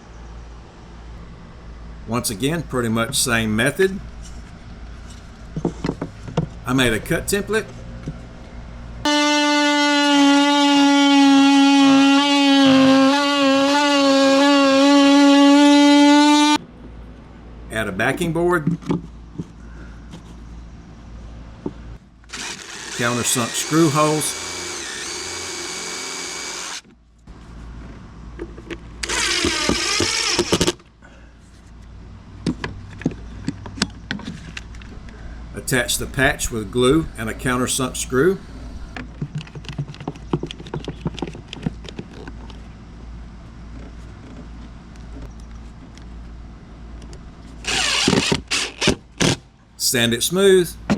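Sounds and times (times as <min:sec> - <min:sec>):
oscillating multi-tool cutting: 0:09.1 - 0:16.6, 0:22.3 - 0:26.9, 0:29.0 - 0:30.8, 0:47.6 - 0:49.0
power drill drilling: 0:09.1 - 0:16.6, 0:22.3 - 0:26.8, 0:29.0 - 0:30.8, 0:47.6 - 0:49.0.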